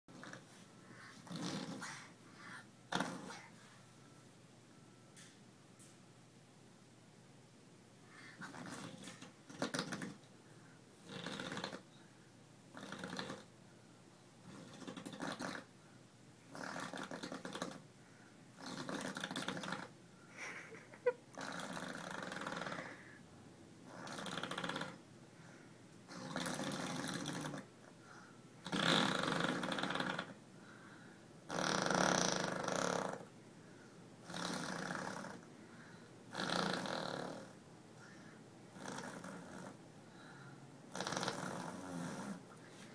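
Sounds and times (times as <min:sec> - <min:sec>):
person blowing fake farts: 0:01.2 - 0:01.9, 0:02.9 - 0:03.4, 0:08.4 - 0:10.2, 0:11.0 - 0:11.8, 0:12.8 - 0:13.5, 0:14.5 - 0:15.7, 0:16.5 - 0:17.8, 0:18.6 - 0:23.1, 0:23.9 - 0:25.0, 0:26.1 - 0:27.7, 0:28.6 - 0:30.4, 0:31.5 - 0:33.2, 0:36.3 - 0:37.5, 0:40.9 - 0:42.4.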